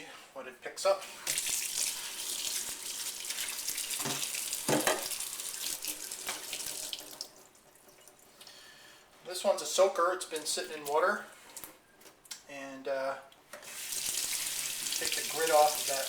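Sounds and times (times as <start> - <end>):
tap running into sink: 3.9 - 5.2, 6.2 - 7.0.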